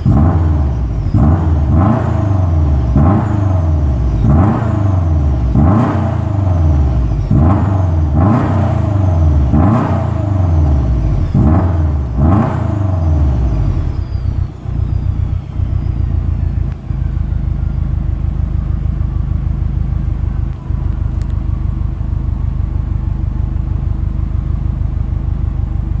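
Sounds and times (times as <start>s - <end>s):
car engine idling: 0.0s - 26.0s
car engine revving: 0.0s - 26.0s
turbo whistle: 11.2s - 26.0s.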